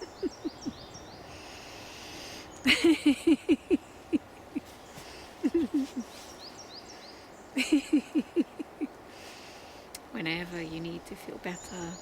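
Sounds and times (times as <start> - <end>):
person laughing rhythmically: 0.0 - 0.8, 2.7 - 4.7, 5.4 - 6.0, 7.6 - 9.0.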